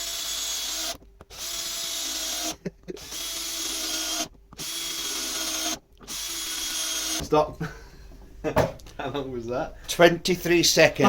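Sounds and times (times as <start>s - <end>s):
cordless drill motor whining: 0.0s - 7.3s.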